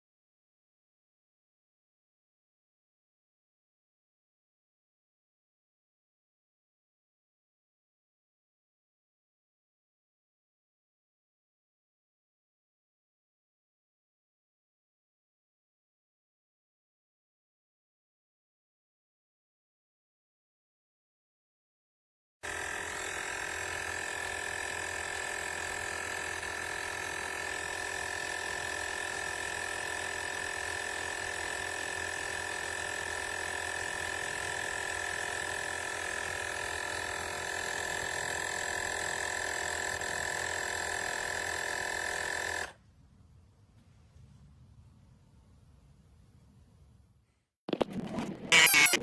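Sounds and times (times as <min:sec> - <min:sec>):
tire inflator compressor whining: 0:22.4 - 0:42.8.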